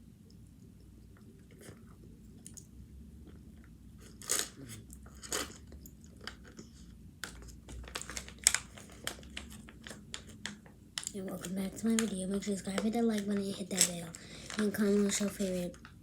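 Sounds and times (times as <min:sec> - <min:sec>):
person chewing food: 0:00.8 - 0:10.5.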